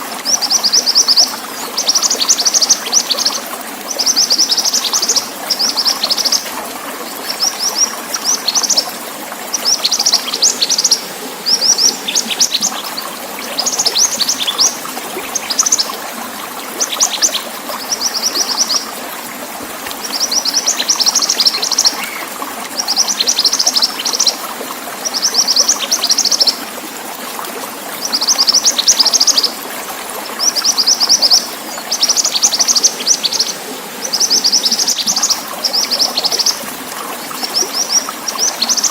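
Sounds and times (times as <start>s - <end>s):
running water: 0.0s - 38.9s
songbird chattering: 9.6s - 15.9s, 20.3s - 22.3s.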